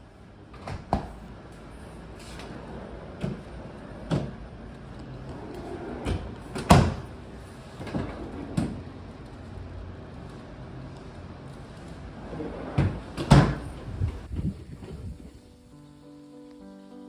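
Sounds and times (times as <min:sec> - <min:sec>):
doors and drawers opening and shutting: 0:00.5 - 0:01.2, 0:02.1 - 0:08.9, 0:12.1 - 0:15.2.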